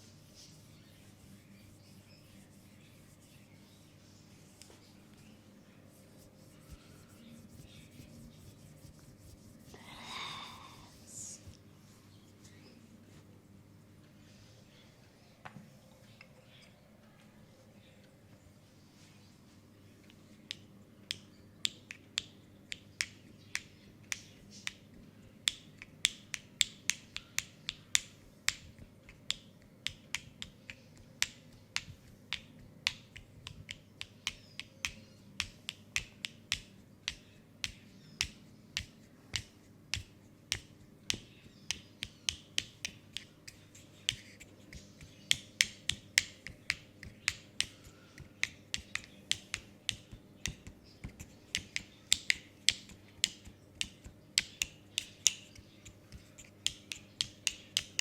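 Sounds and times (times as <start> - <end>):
faint low hum: 0.0 - 58.0
hands clicking and snapping: 20.1 - 58.0.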